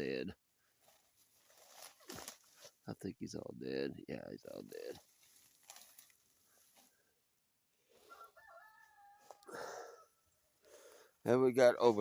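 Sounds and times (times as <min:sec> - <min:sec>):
faint rooster crowing: 0:08.0 - 0:10.4.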